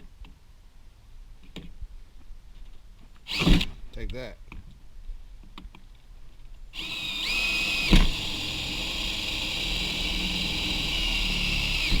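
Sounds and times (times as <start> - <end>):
electric drill whining: 3.3 - 3.7, 6.8 - 12.0.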